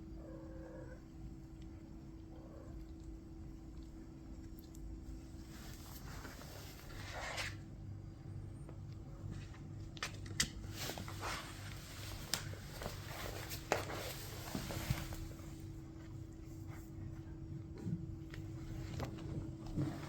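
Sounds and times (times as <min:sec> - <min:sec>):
faint steady hum: 0:00.0 - 0:20.0
soft rustling: 0:02.8 - 0:07.8, 0:10.6 - 0:20.0.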